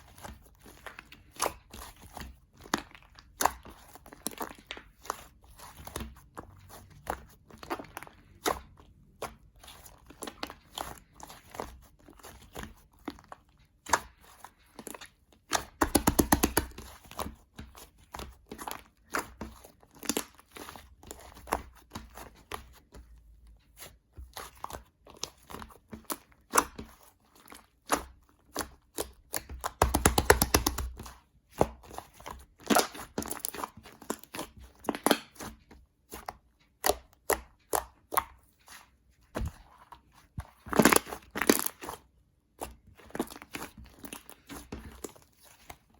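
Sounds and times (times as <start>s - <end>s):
sticky slime clicks and crackles: 15.4s - 17.0s, 27.8s - 31.6s, 40.7s - 42.0s.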